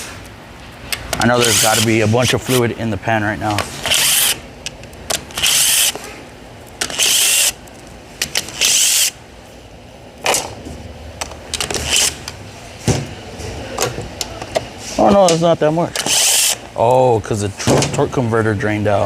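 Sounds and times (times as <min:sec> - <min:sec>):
electric ratchet whirring: 0:03.8 - 0:04.4, 0:05.2 - 0:06.0, 0:06.8 - 0:07.6, 0:08.3 - 0:09.2, 0:16.0 - 0:16.6.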